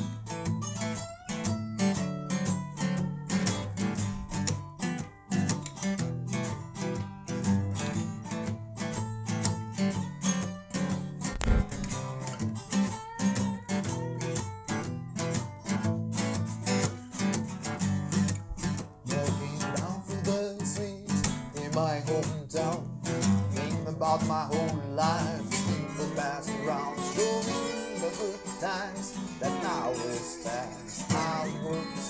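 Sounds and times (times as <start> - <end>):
strummed guitar: 0.0 - 32.0
bass line: 11.3 - 12.0.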